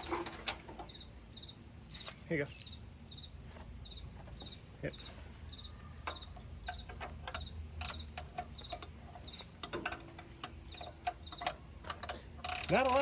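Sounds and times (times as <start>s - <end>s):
cricket chirping: 0.9s - 9.4s, 10.7s - 11.5s
hand tools tapping on metal: 6.0s - 13.0s.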